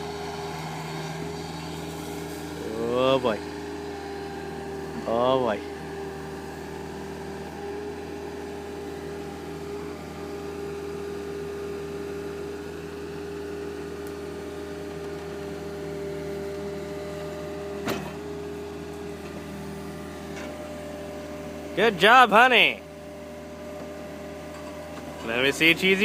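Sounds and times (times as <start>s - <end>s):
excavator engine whining: 0.0s - 26.0s.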